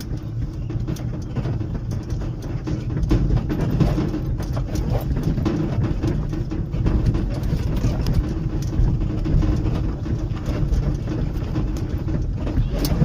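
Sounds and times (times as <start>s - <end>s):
auto-rickshaw engine running: 0.0s - 13.0s
road rumble: 0.0s - 13.0s.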